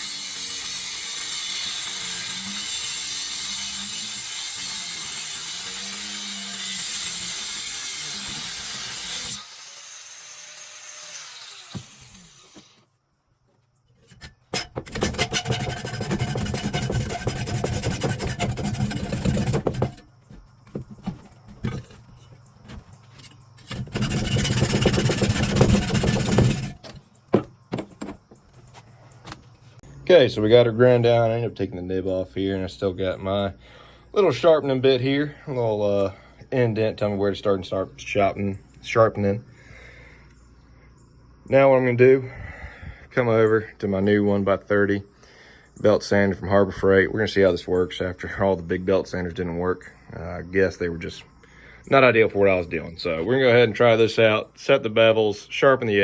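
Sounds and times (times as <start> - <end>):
power grinder grinding steel: 0.0 - 12.8, 14.1 - 20.0, 23.1 - 27.0.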